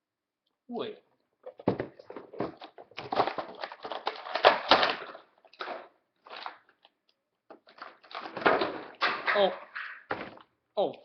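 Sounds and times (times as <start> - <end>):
plastic packaging crackling: 2.4 - 6.9.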